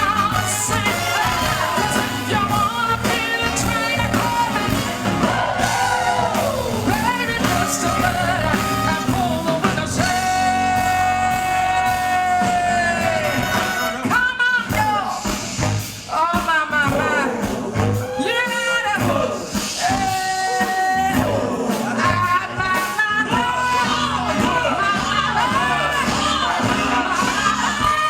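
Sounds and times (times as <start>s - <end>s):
woman belting wordless vocals: 0.0s - 15.1s
live rock and roll band: 0.0s - 28.0s.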